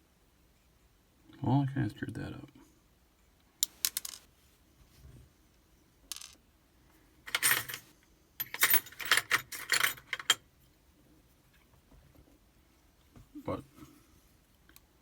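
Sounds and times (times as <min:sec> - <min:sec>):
small metal lock parts clinking: 0:07.3 - 0:10.4.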